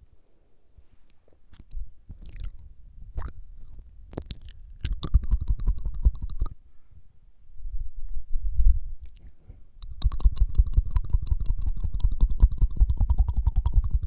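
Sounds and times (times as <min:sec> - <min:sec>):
wet tongue clicks: 0:01.5 - 0:06.6, 0:09.0 - 0:14.0
tongue flutters: 0:01.6 - 0:06.6, 0:09.0 - 0:14.0.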